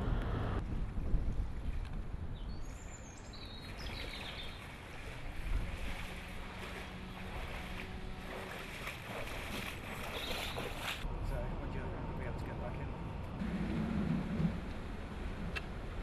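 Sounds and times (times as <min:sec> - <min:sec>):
wind buffeting microphone: 0:00.0 - 0:16.0
water washing: 0:03.6 - 0:11.1.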